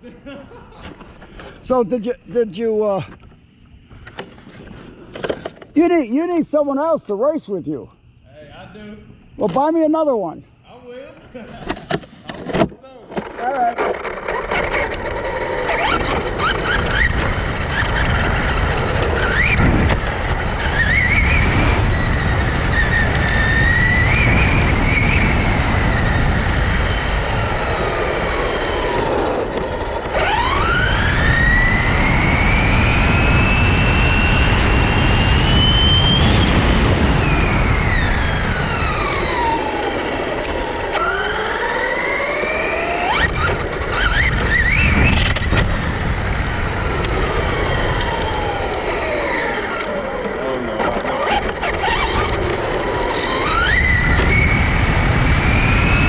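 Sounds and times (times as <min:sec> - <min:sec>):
rc car motor whining: 0:13.2 - 0:56.0
rushing wind: 0:13.8 - 0:56.0.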